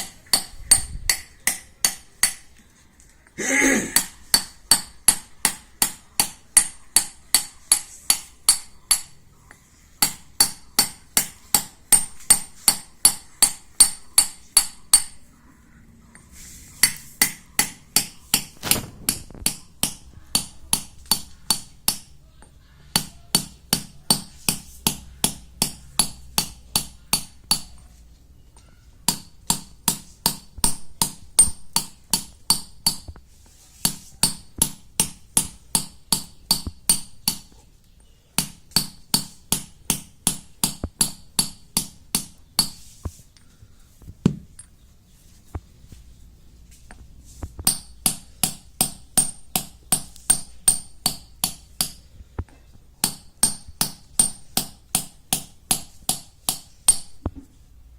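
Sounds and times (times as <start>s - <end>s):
hammer tapping chisel into stone: 0.0s - 2.6s, 16.8s - 22.1s, 22.9s - 27.9s, 29.1s - 37.6s, 38.4s - 42.8s, 47.6s - 52.1s, 53.0s - 57.5s.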